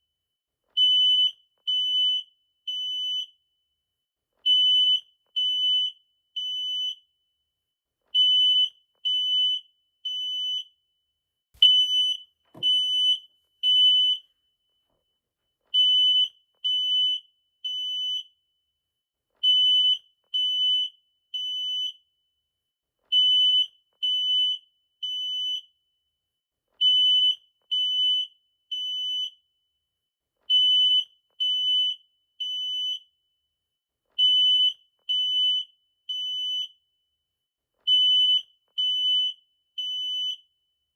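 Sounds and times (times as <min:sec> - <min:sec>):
smoke detector alarm beeping: 0:00.8 - 0:03.4, 0:04.5 - 0:07.1, 0:11.6 - 0:14.7, 0:23.1 - 0:25.8, 0:26.8 - 0:29.4, 0:30.5 - 0:33.1, 0:34.2 - 0:36.8, 0:37.9 - 0:40.6.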